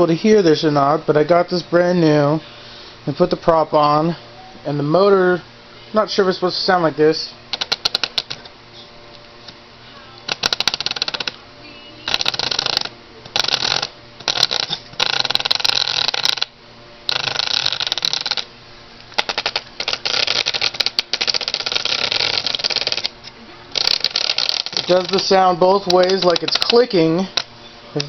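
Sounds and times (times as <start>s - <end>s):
electric motor bursts: 7.5s - 8.4s, 10.3s - 18.5s, 19.1s - 28.0s
fast clicking rattle: 7.5s - 8.5s, 10.3s - 11.4s, 12.1s - 16.5s, 17.1s - 18.5s, 19.2s - 27.5s.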